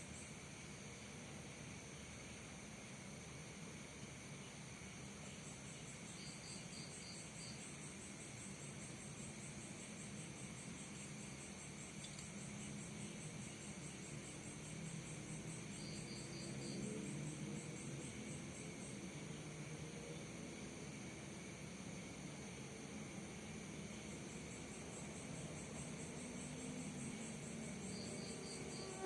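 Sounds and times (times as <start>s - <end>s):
crickets chirping: 0.0s - 29.0s
faint low hum: 0.0s - 29.0s.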